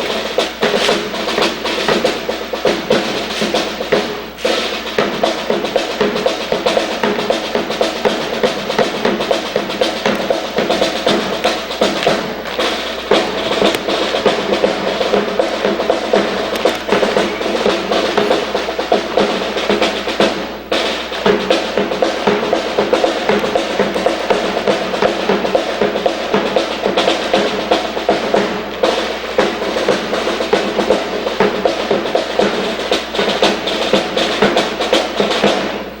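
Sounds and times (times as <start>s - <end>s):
drum-led music: 0.0s - 36.0s
sharp clicks: 16.1s - 18.6s.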